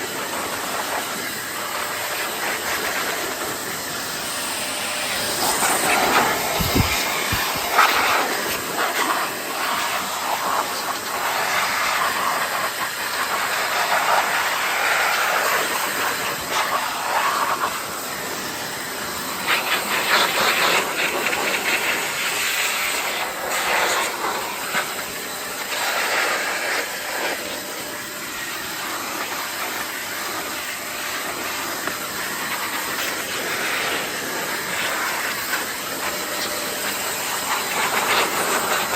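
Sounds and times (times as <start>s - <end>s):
garden hose spraying water: 0.0s - 38.9s.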